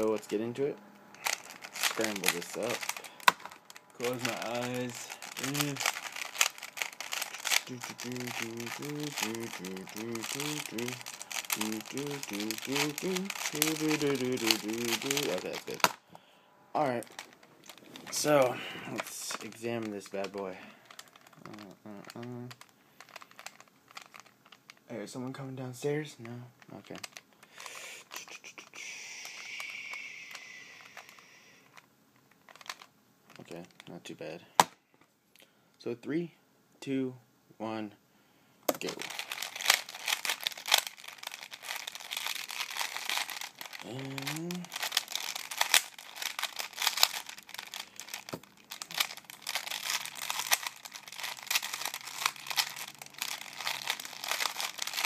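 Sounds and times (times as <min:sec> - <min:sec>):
steady hiss: 0:04.0 - 0:06.0, 0:27.5 - 0:31.7
plastic puzzle cube clicking: 0:38.8 - 0:55.0.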